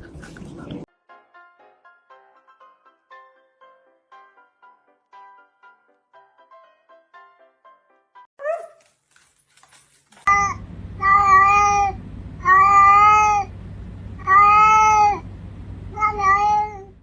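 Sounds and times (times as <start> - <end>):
pet animal crying: 10.3 - 17.0
steady low hum: 10.3 - 17.0.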